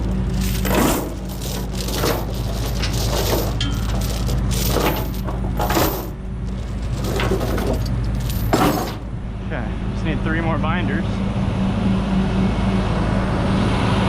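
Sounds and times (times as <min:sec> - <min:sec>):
chain rattling and clinking: 0:00.0 - 0:09.1
steady low hum: 0:00.0 - 0:13.9.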